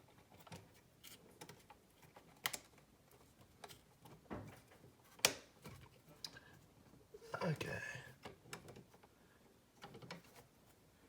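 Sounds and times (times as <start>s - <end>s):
small clicks and knocks: 0.0s - 6.4s, 8.2s - 9.2s, 9.8s - 10.5s.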